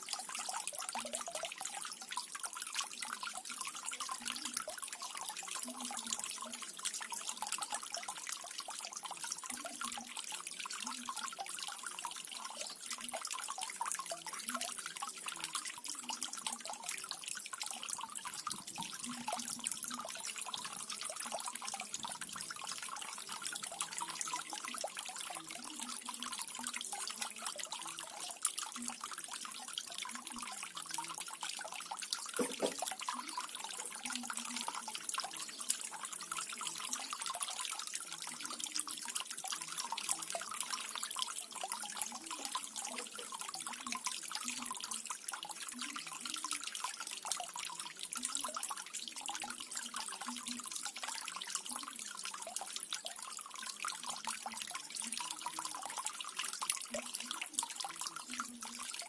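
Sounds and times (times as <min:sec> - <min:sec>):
water gurgling: 0:00.0 - 0:59.0
small waterfall splashing: 0:29.4 - 0:37.5.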